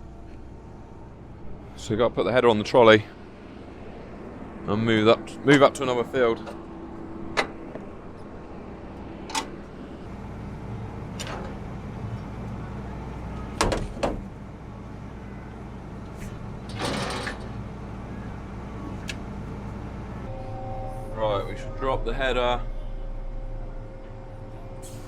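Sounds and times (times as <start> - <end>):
combine harvester running: 1.6 - 25.0
sharp knocks and clunks: 13.6 - 14.3.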